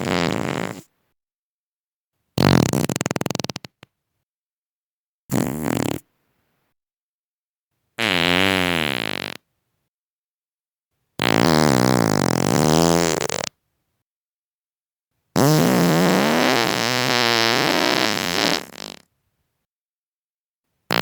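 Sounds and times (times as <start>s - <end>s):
person farting: 0.0s - 0.9s, 2.4s - 3.8s, 5.3s - 6.1s, 8.0s - 9.4s, 11.2s - 13.5s, 15.4s - 19.1s.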